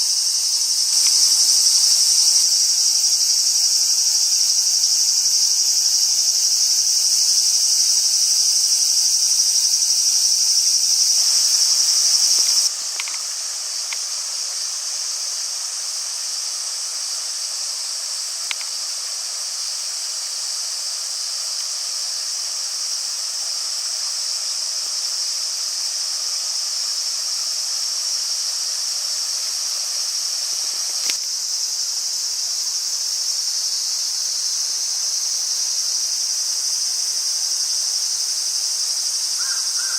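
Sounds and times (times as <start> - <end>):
insect chorus: 0.0 - 39.9
faint ticks: 0.9 - 2.5, 11.4 - 14.1, 18.4 - 18.7, 30.7 - 31.2.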